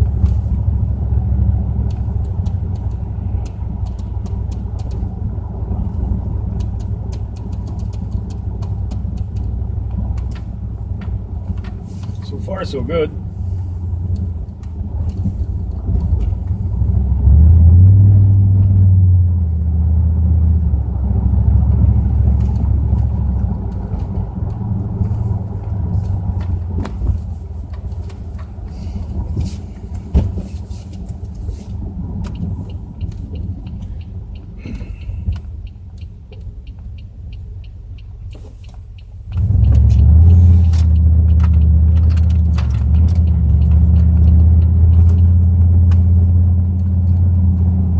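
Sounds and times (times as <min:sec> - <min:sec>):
car engine deep rumble: 0:00.0 - 0:47.9
fast steady ticking: 0:01.8 - 0:05.2, 0:05.8 - 0:13.2, 0:31.1 - 0:42.0.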